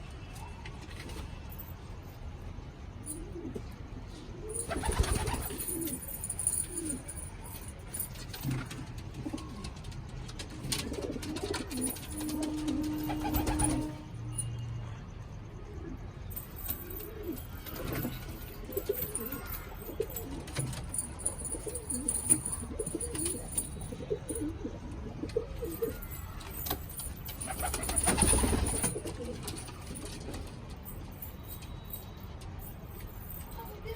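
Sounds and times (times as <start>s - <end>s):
pigeons cooing: 16.8s - 20.6s, 21.3s - 26.2s.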